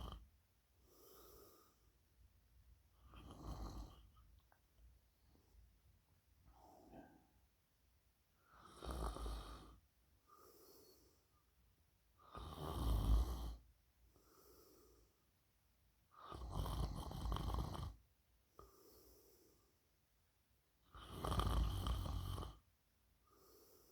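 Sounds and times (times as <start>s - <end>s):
soft breaths: 0.8s - 2.2s, 2.9s - 7.6s, 8.4s - 11.6s, 14.1s - 15.3s, 18.6s - 19.9s, 23.2s - 23.9s
person snoring: 3.1s - 4.1s, 8.6s - 9.8s, 21.0s - 22.6s.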